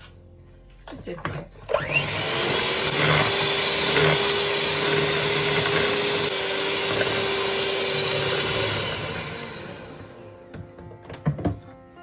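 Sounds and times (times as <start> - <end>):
electric mixer whirring: 1.7 - 10.8.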